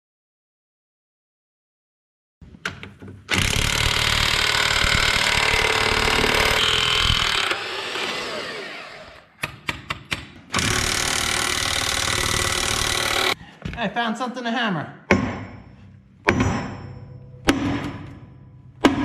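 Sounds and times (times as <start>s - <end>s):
power tool running: 3.3s - 9.3s, 10.6s - 13.4s.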